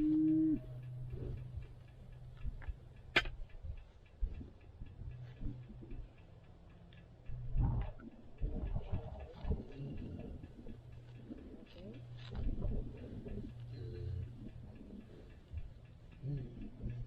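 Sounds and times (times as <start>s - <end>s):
faint ticking: 0.0s - 17.0s
steady low hum: 0.0s - 17.0s
sharp click: 2.6s - 3.4s.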